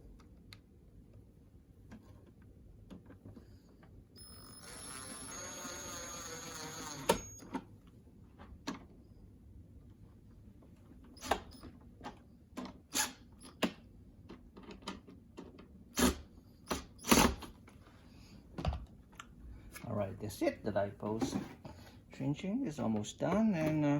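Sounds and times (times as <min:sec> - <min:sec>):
electric screwdriver whirring: 0:04.6 - 0:07.4.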